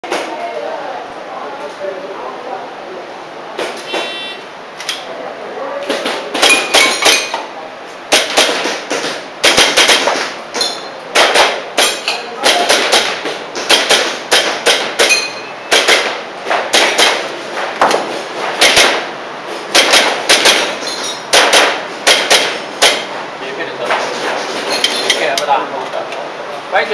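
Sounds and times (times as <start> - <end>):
airsoft pistol shots: 8.1 - 10.4, 11.1 - 17.3, 18.6 - 19.1, 19.7 - 23.1.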